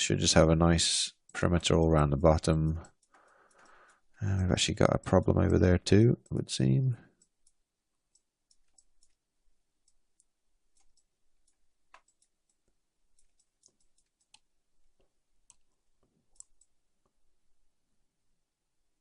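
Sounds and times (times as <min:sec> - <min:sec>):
computer mouse clicks: 0:02.7 - 0:04.2, 0:07.2 - 0:09.2, 0:09.8 - 0:17.2.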